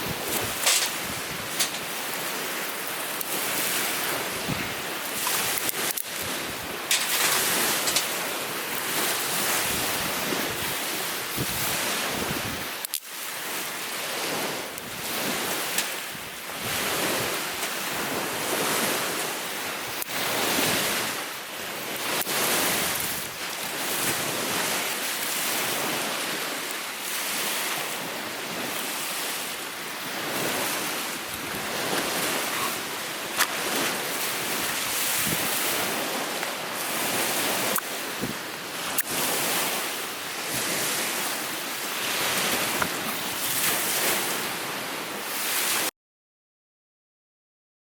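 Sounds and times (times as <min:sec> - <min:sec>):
wind gusting over microphone: 0:00.0 - 0:12.8, 0:14.1 - 0:19.2, 0:27.4 - 0:45.8
lake waves washing ashore: 0:00.0 - 0:45.9.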